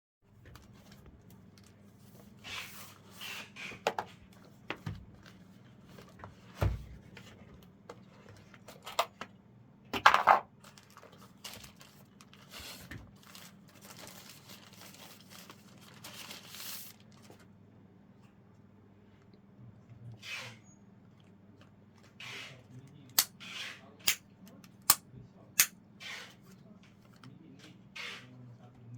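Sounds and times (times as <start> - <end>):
packaging rustling and tearing: 10.6 - 17.5.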